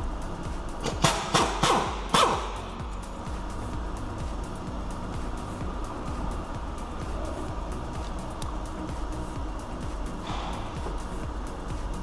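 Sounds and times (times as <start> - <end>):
background music: 0.0 - 12.0
sharp metallic knocks: 0.8 - 2.7.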